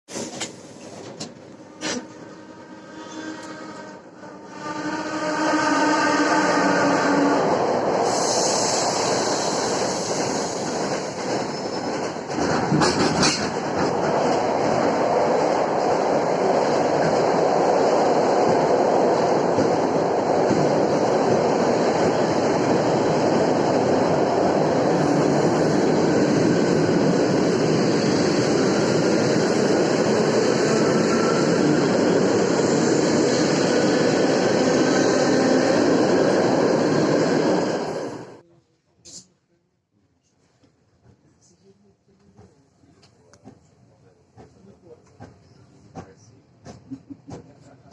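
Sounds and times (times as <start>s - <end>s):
train wheels clattering on rails: 9.6s - 23.1s.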